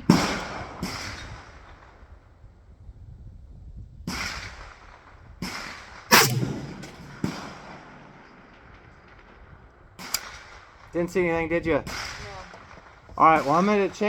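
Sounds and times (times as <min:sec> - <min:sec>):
rifle shots with echo: 0:00.0 - 0:02.0, 0:04.1 - 0:11.0, 0:11.8 - 0:14.0.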